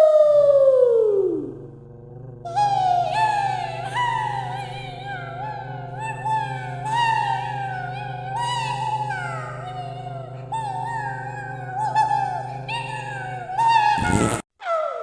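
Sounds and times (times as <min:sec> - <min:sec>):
steady low hum: 0:00.5 - 0:14.4
swooping electronic tones: 0:14.0 - 0:14.4.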